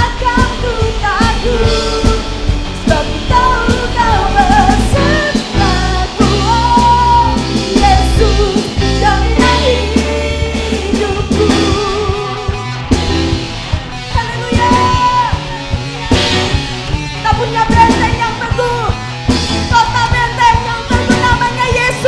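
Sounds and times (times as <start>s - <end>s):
woman singing: 0.0s - 12.9s, 14.0s - 15.7s, 17.2s - 22.0s
bass: 0.0s - 22.0s
drums: 0.0s - 22.0s
electric guitar: 0.0s - 22.0s
keyboard: 0.0s - 22.0s.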